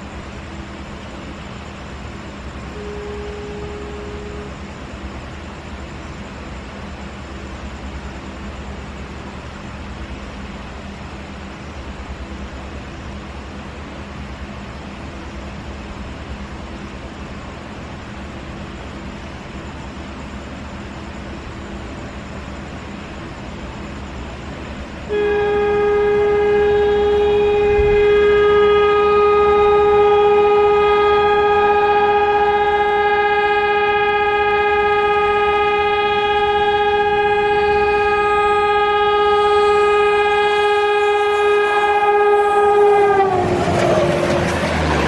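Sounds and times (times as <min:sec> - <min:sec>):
locomotive horn honk: 0:02.7 - 0:04.7, 0:25.1 - 0:45.0.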